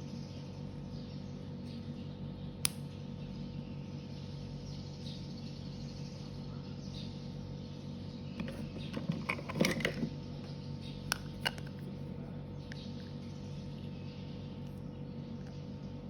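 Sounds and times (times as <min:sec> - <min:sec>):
low electrical hum: 0:00.0 - 0:16.0
faint handling noises: 0:08.4 - 0:13.2.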